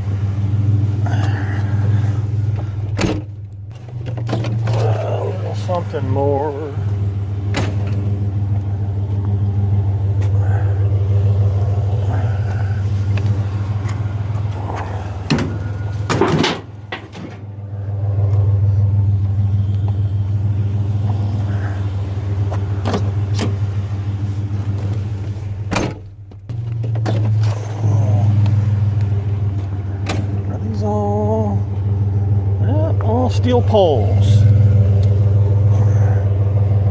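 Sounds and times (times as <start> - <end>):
truck engine idling: 0.0 - 36.9
sharp knocks and clanks: 7.5 - 8.1, 14.8 - 17.5, 24.9 - 27.5, 30.0 - 30.4.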